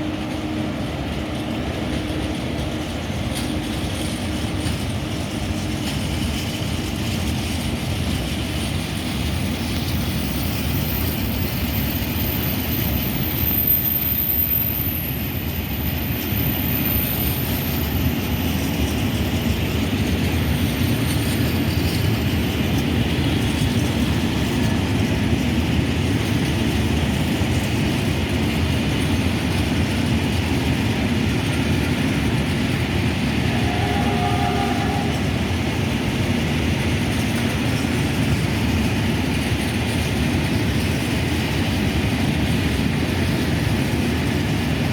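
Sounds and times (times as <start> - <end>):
freight train rolling past: 0.0 - 44.9
faint tone: 33.5 - 35.4.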